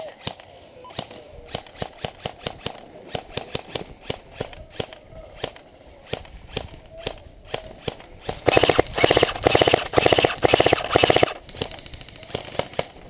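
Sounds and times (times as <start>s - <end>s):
airsoft guns firing: 7.5s - 13.0s.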